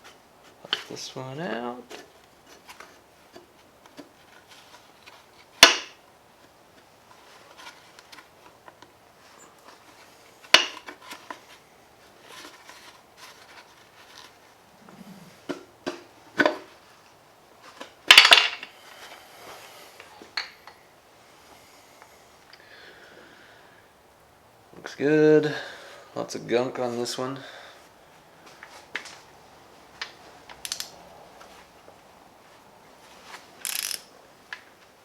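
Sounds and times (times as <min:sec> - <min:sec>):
tool ticks: 0:30.6 - 0:30.9, 0:33.6 - 0:34.1.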